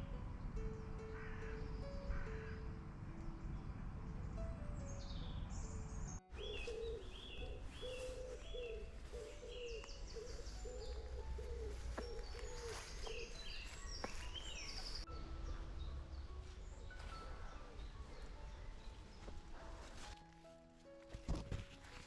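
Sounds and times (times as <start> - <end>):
low outdoor rumble: 0.0 - 6.2
birds chirping: 0.0 - 20.2
lower bird call: 6.3 - 15.6.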